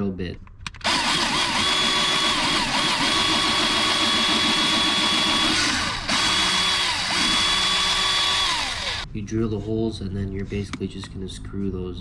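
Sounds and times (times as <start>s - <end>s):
power drill whining: 0.8s - 9.0s.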